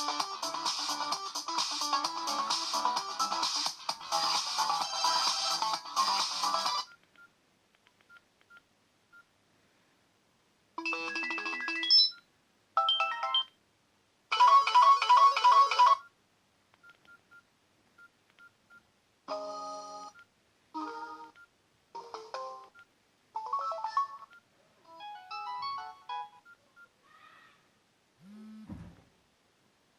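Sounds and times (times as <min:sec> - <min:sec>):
electronic phone ringtones: 0:10.8 - 0:12.2.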